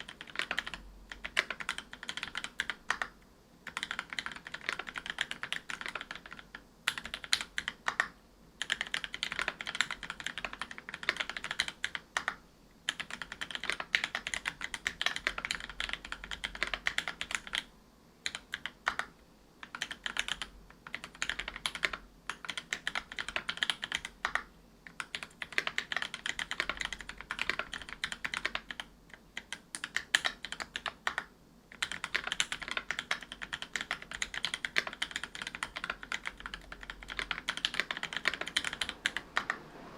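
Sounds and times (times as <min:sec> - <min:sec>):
mechanical keyboard typing: 0:00.0 - 0:39.7.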